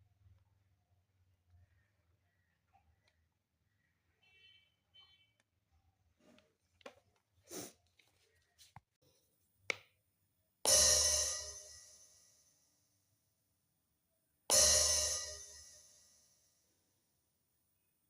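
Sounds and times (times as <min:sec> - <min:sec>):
electronic cymbal crash: 0:10.7 - 0:12.0, 0:14.5 - 0:16.1.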